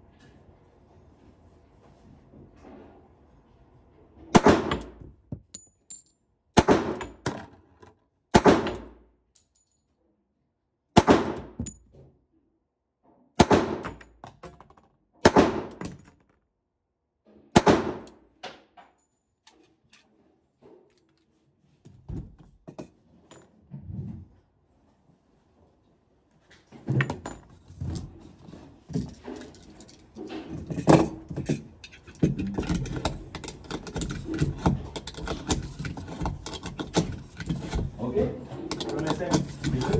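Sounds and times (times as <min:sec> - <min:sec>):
pistol shots: 0:08.3 - 0:08.9, 0:11.0 - 0:11.5, 0:13.4 - 0:13.8, 0:15.2 - 0:15.8, 0:17.6 - 0:18.1.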